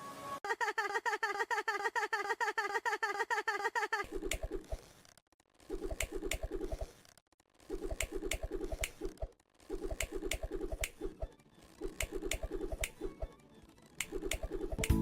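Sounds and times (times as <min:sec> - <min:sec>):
electronic music: 0:14.1 - 0:15.0.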